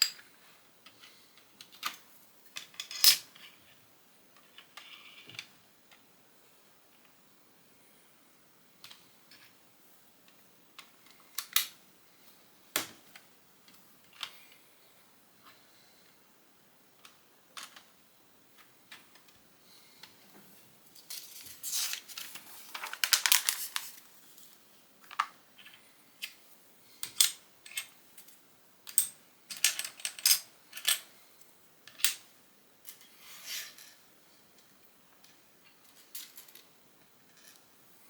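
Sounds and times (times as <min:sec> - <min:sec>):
plastic pieces clattering: 0:21.0 - 0:24.0.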